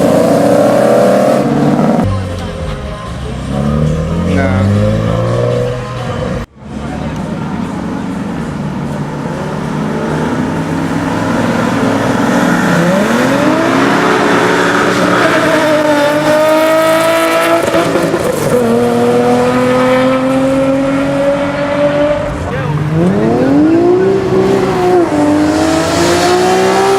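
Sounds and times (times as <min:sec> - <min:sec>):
car engine accelerating hard: 0:07.3 - 0:26.9.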